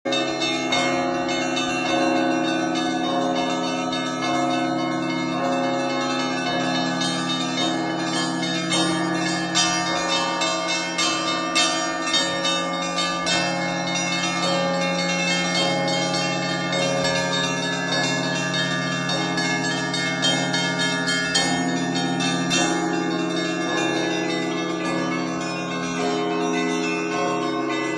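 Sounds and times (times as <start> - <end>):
church bells ringing: 0.1 - 27.9
deep large bells ringing: 0.1 - 27.9.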